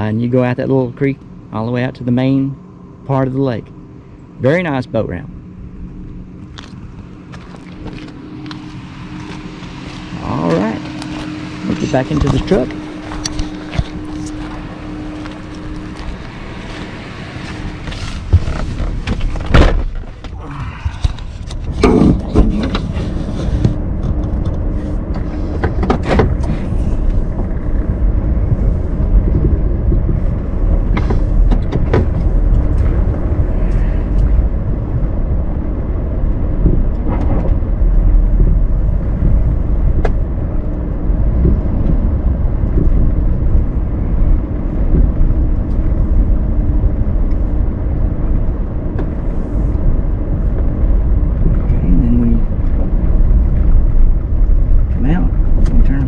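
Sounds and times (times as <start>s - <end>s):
truck engine and road noise: 0.0s - 56.0s.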